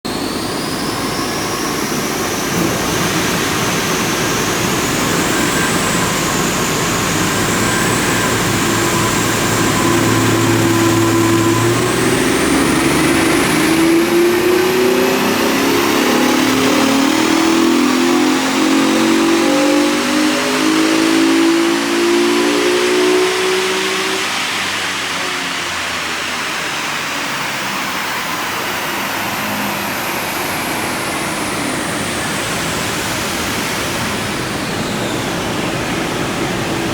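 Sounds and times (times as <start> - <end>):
car engine under load: 0.0 - 36.9
thin high whine: 0.1 - 24.7.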